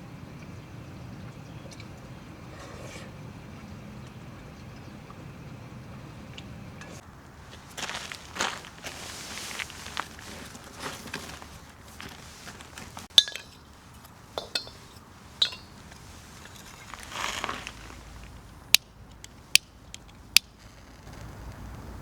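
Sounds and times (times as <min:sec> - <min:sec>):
rustle: 0:06.0 - 0:22.0
metal objects clinking: 0:13.1 - 0:13.7, 0:14.3 - 0:17.8.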